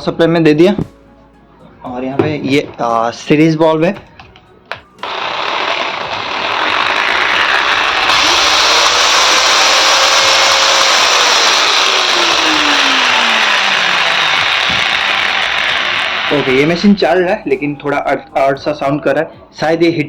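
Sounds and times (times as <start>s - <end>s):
angle grinder whirring: 4.7s - 17.2s.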